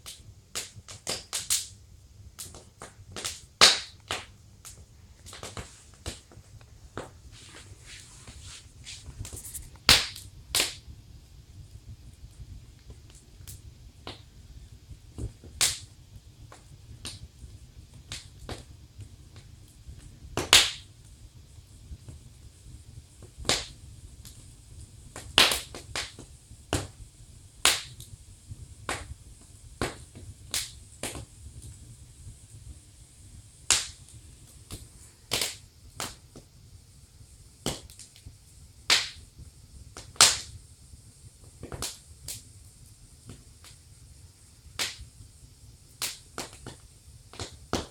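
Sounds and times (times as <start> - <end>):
wood fire crackling: 0.0 - 47.9
low steady rumble: 1.7 - 35.9.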